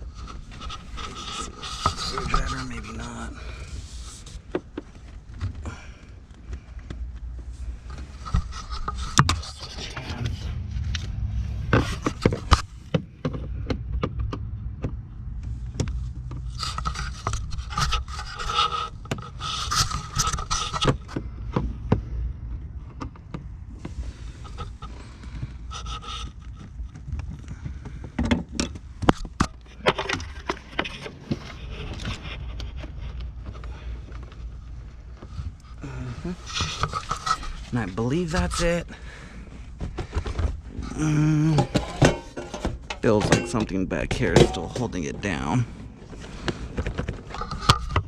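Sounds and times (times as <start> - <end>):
steady low hum: 0.0 - 48.0
sharp clicks and knocks: 11.7 - 34.4, 41.6 - 45.4.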